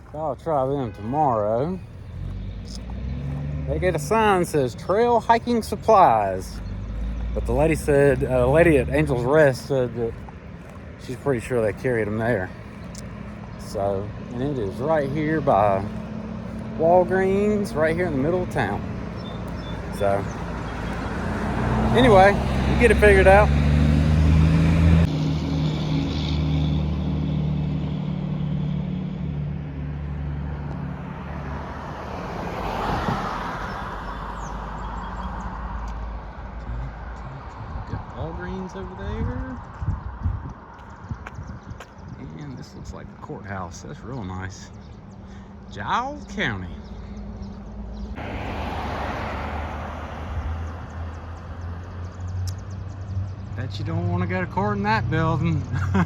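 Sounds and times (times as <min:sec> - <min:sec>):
traffic rush: 0:00.0 - 0:56.0
vehicle engine hum: 0:00.0 - 0:56.0
car passing by: 0:00.5 - 0:38.3, 0:47.4 - 0:53.3.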